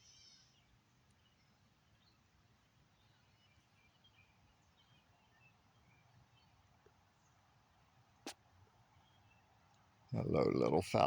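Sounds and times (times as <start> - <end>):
faint bird chirps: 0.0 - 7.5, 8.8 - 9.6.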